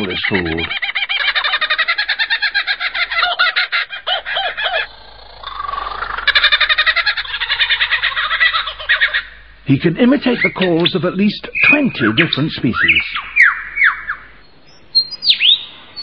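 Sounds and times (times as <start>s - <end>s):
lyrebird chirping: 0.0s - 16.0s.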